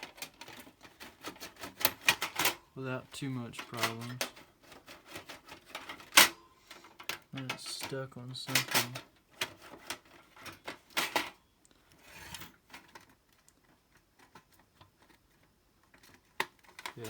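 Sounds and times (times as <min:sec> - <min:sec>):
plastic scrape: 0:08.5 - 0:13.2.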